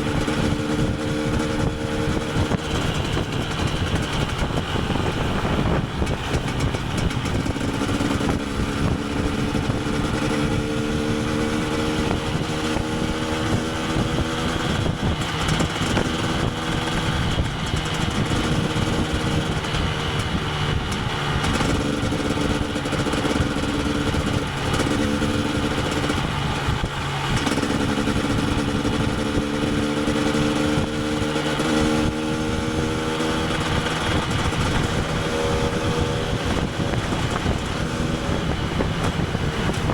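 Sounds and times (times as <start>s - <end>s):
two-stroke motorcycle engine running: 0.0s - 39.9s.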